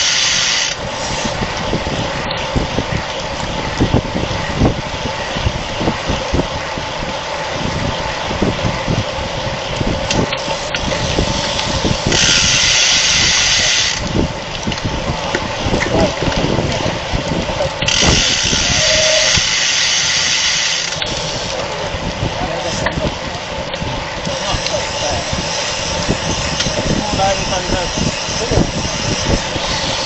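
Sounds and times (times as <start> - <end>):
faint bicycle drivetrain hum: 0.0 - 30.0
wind buffeting microphone: 0.0 - 30.0
high hiss: 18.0 - 21.6.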